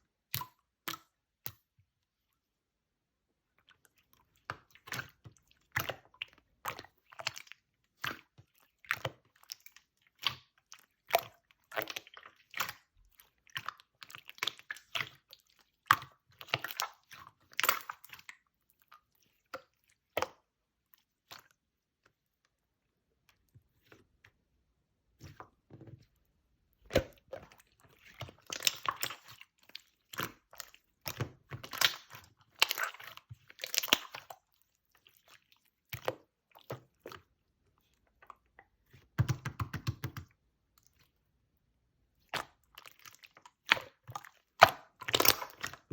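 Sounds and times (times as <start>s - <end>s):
slime squishing and popping: 26.9s - 34.5s, 42.4s - 45.9s.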